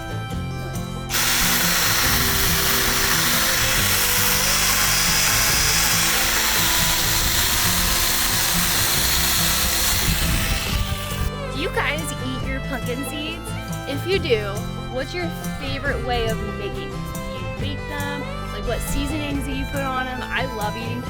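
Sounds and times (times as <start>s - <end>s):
chainsaw cutting pumpkin: 1.1s - 11.4s.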